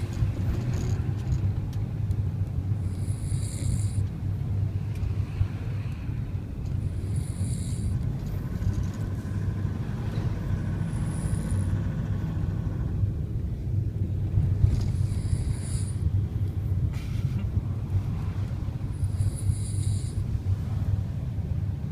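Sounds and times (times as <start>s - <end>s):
van engine rumble: 0.0s - 21.9s
person snoring heavily: 2.8s - 4.1s, 6.8s - 8.0s, 10.8s - 11.9s, 14.7s - 16.1s, 18.9s - 20.3s.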